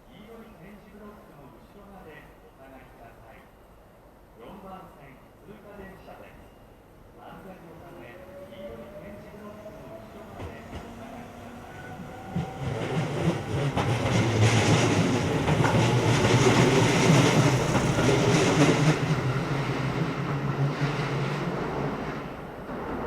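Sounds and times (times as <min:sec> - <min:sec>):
electric train passing: 0:07.6 - 0:23.0.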